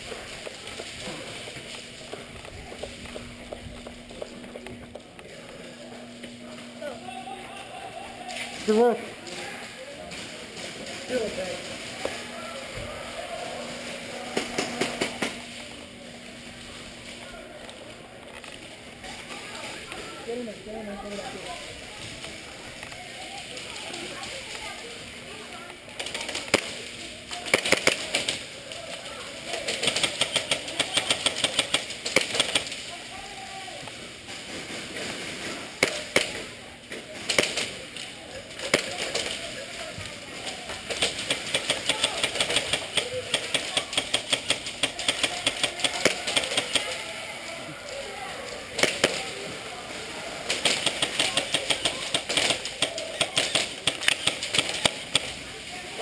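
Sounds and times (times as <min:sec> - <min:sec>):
airsoft guns firing: 0:14.3 - 0:15.6, 0:26.0 - 0:28.4, 0:29.5 - 0:32.8, 0:35.8 - 0:36.5, 0:37.1 - 0:37.8, 0:38.6 - 0:39.5, 0:40.8 - 0:47.1, 0:48.7 - 0:49.5, 0:50.4 - 0:55.4.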